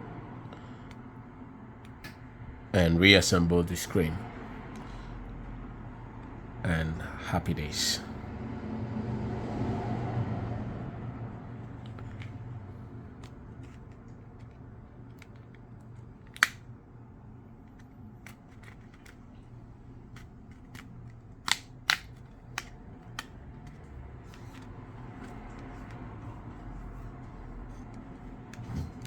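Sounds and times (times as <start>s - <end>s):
low steady hum: 0.0s - 29.0s
clicks of plastic phone parts: 11.7s - 12.4s, 13.1s - 16.6s, 17.7s - 19.4s, 20.1s - 29.0s.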